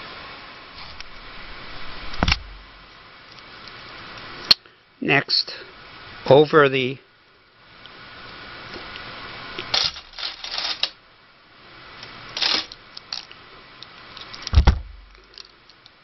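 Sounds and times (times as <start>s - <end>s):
dull thump: 2.1s - 2.6s, 14.5s - 15.1s
bicycle chain clicking and rattling: 9.7s - 11.0s, 12.3s - 13.4s.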